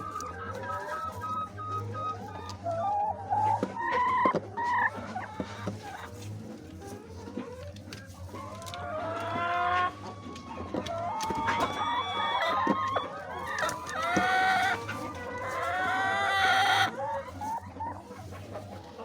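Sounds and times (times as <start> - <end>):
chickens clucking: 0.0 - 19.0
roosters crowing: 8.3 - 17.0.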